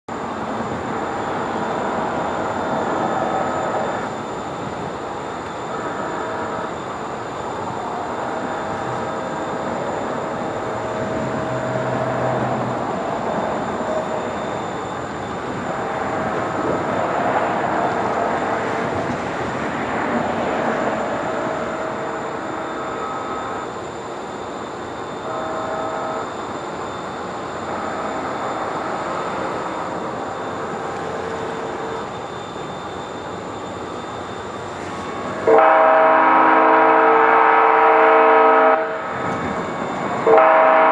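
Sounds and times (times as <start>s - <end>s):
train rumble: 0.1s - 40.9s
train horn blasts: 5.6s - 6.9s, 15.5s - 17.1s, 21.3s - 23.7s, 25.2s - 26.4s, 27.6s - 29.0s, 35.0s - 40.9s.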